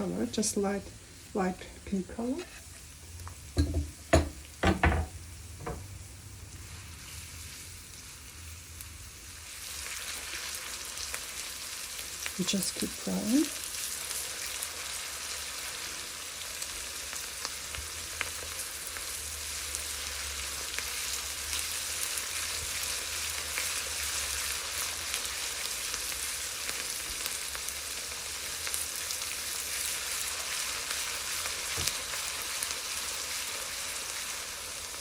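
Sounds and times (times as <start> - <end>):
onions sizzling in a wok: 0.0 - 35.0.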